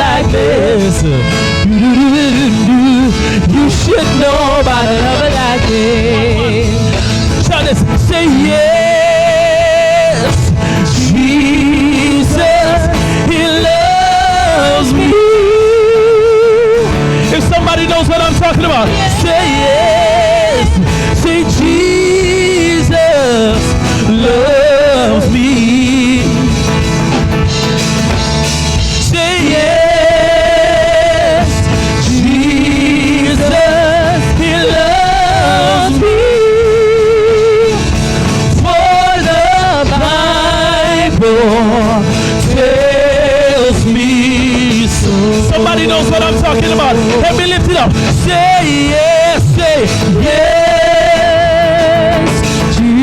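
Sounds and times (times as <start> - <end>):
live band playing: 0.0 - 53.0
man singing gospel: 0.0 - 53.0.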